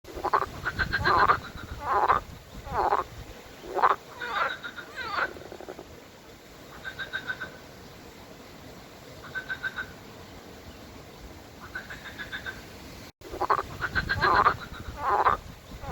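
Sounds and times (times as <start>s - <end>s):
frogs croaking: 0.1s - 6.0s, 6.6s - 7.8s, 9.2s - 10.0s, 11.6s - 15.9s.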